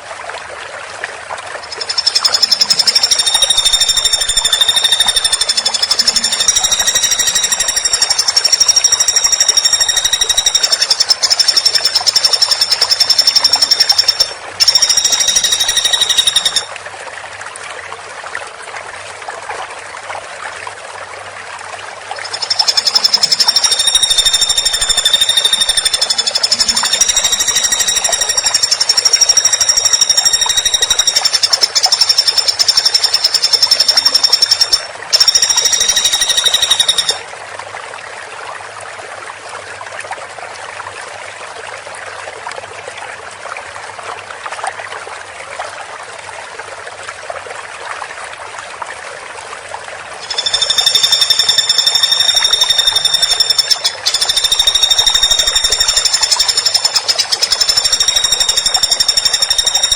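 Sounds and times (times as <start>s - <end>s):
woodpecker rattling trill: 1.6s - 16.7s, 22.2s - 37.2s, 50.2s - 59.9s.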